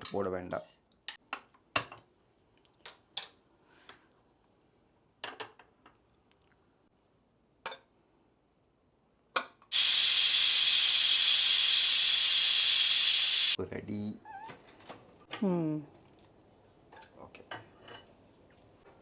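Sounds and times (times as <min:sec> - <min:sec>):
pressure cooker hissing steam: 0:09.7 - 0:13.6.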